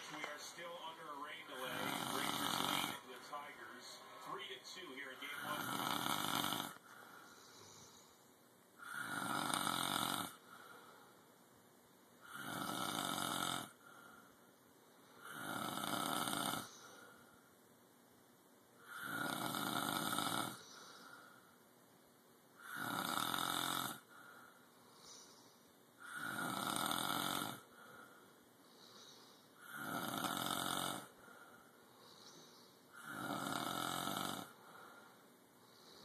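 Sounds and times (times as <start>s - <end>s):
loud snoring: 1.5s - 3.1s, 5.4s - 6.8s, 8.8s - 10.4s, 12.2s - 13.8s, 15.2s - 16.8s, 18.8s - 20.6s, 22.6s - 24.1s, 26.0s - 27.7s, 29.6s - 31.1s, 33.0s - 34.6s.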